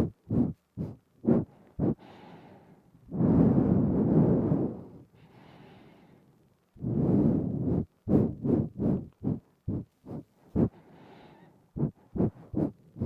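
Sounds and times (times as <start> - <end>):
nasal breathing puffs: 0.0 - 6.2, 6.8 - 13.0.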